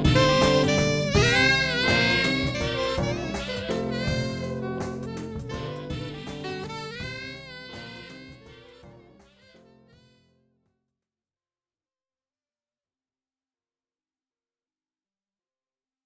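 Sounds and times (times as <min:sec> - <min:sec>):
band playing instrumental music: 0:00.0 - 0:09.1
lead melody with bending notes: 0:00.0 - 0:09.4.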